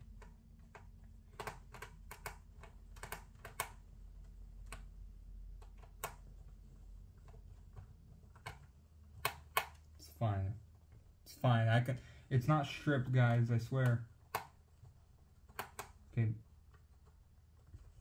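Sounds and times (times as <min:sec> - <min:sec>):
screwdriver clicks and taps: 0:09.2 - 0:09.8, 0:15.5 - 0:16.0.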